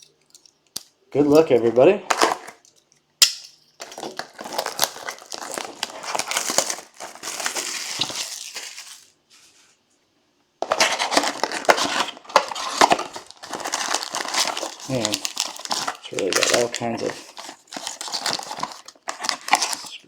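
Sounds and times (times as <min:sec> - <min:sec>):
plastic wrapping crinkling: 0:03.8 - 0:09.8, 0:10.6 - 0:20.0.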